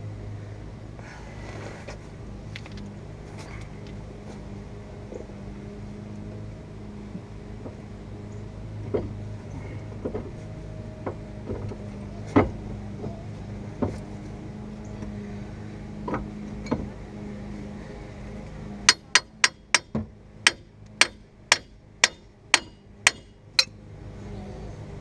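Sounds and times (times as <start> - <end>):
hammer blows on metal: 18.9 - 23.8.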